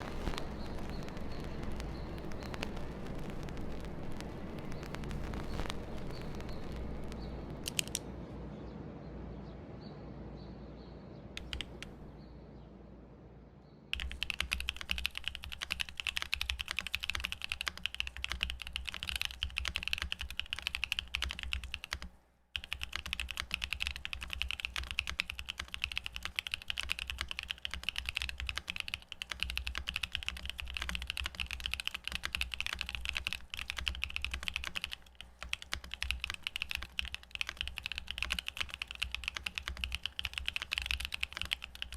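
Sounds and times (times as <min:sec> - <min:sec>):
mechanical keyboard typing: 0:00.0 - 0:08.0, 0:11.4 - 0:12.1, 0:14.0 - 0:41.9
low rumble: 0:00.0 - 0:10.5.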